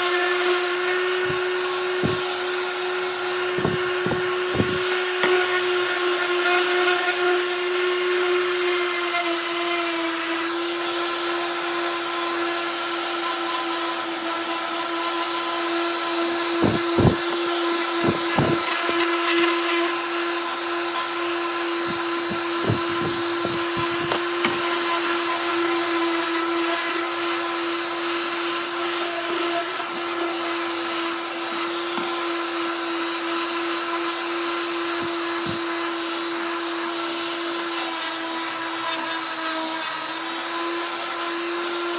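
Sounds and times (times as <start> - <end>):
orbital sander whining: 0.0 - 41.9
short knocks: 1.2 - 2.4, 3.4 - 5.4, 21.8 - 24.3.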